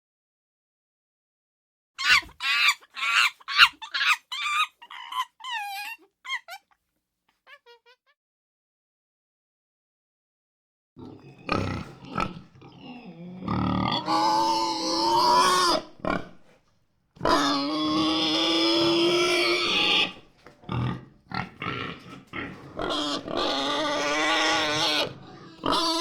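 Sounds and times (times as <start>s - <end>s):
animal long drawn-out cries: 2.0s - 6.6s, 7.4s - 8.1s, 11.0s - 16.0s, 17.2s - 20.2s, 22.7s - 26.0s
animal grunts: 11.0s - 16.6s, 17.2s - 26.0s.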